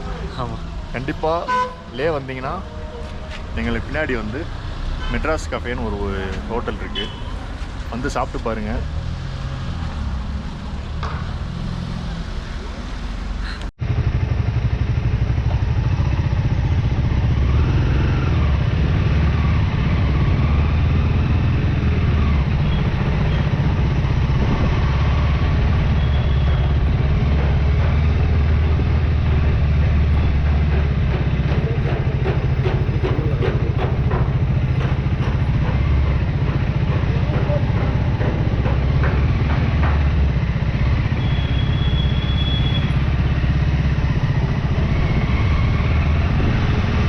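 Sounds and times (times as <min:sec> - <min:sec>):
motorcycle engine running: 0:13.8 - 0:47.0.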